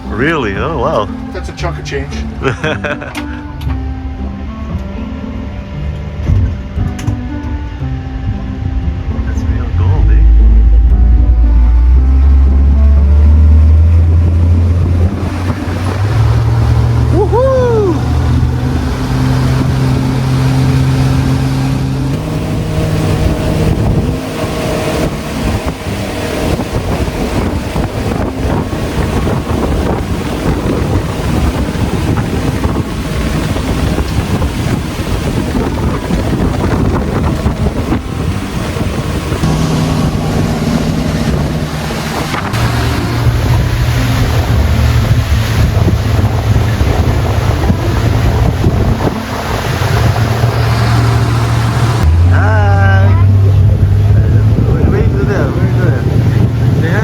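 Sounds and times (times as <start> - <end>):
water rushing: 0.0 - 5.4, 9.2 - 57.0
boat motor droning: 0.0 - 57.0
wind buffeting microphone: 6.1 - 57.0.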